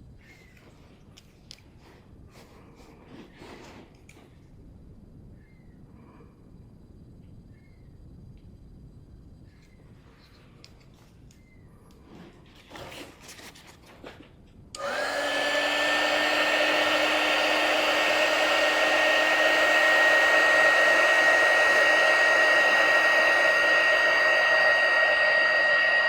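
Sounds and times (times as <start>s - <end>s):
hot-air blower whining: 14.8s - 26.0s
rush of air: 15.9s - 26.0s.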